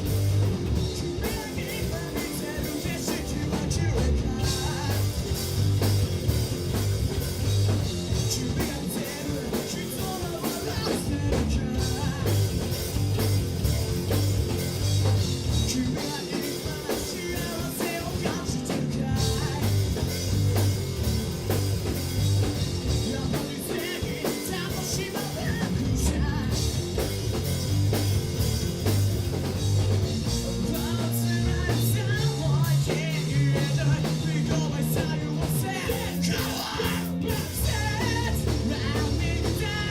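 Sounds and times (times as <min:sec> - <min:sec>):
rock band playing live: 0:00.0 - 0:39.9
person singing: 0:01.0 - 0:05.4, 0:08.2 - 0:12.7, 0:15.6 - 0:20.1, 0:22.9 - 0:26.7, 0:30.6 - 0:39.9.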